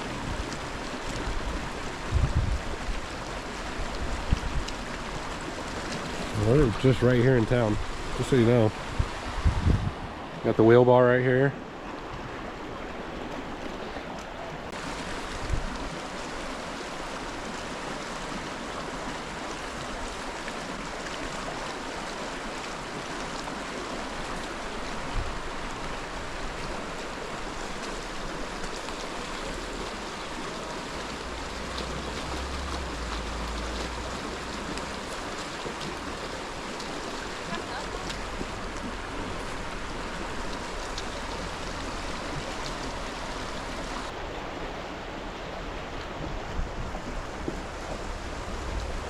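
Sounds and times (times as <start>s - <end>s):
river flowing: 0.0s - 49.0s.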